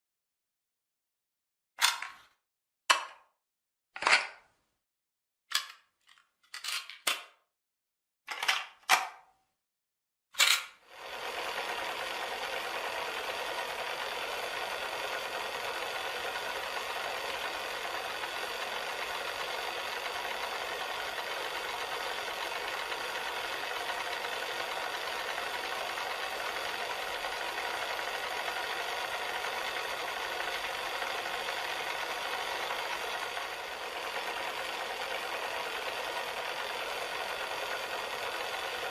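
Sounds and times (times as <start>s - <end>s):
cassette player mechanical whir: 10.9s - 38.9s.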